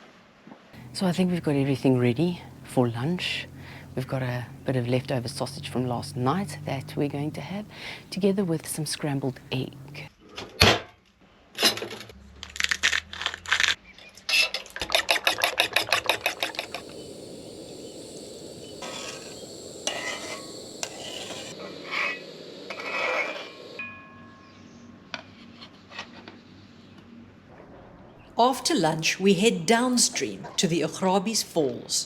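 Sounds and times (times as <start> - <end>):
sizzling in a pan: 16.0 - 23.8.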